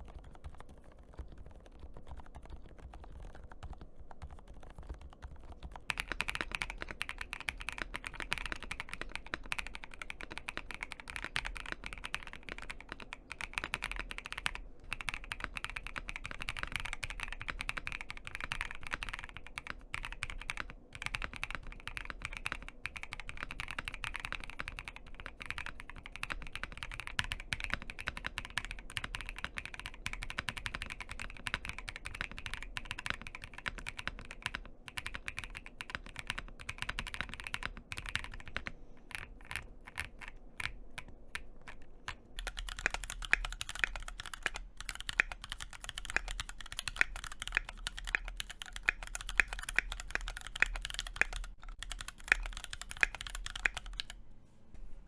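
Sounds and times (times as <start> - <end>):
fast typing on mechanical keyboard: 0.0 - 54.2.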